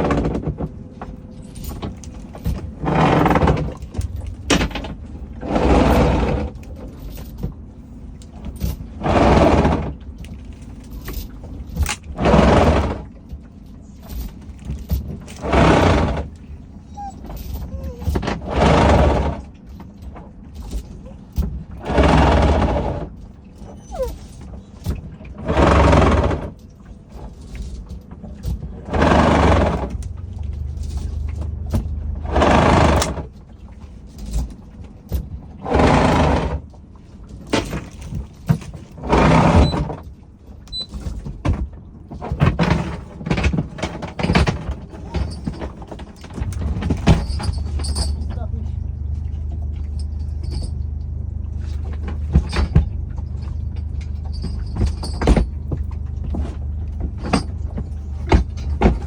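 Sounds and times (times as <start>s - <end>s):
rope rasping as hauled in: 16.9s - 19.4s.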